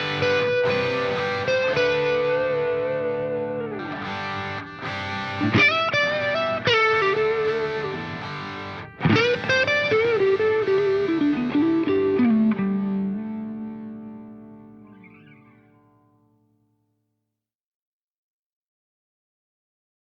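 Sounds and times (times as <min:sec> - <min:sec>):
distorted electric guitar chords: 0:00.0 - 0:16.0.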